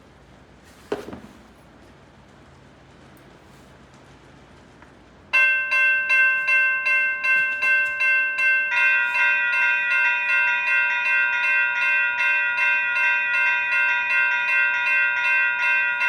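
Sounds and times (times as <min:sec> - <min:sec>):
electronic railroad bell ringing: 0:05.3 - 0:16.0
second electronic bell: 0:05.4 - 0:16.0.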